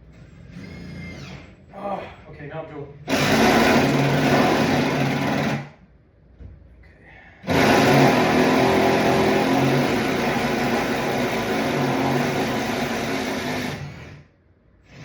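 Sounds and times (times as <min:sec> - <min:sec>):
power drill boring into wood: 0:03.1 - 0:05.7, 0:07.5 - 0:14.2.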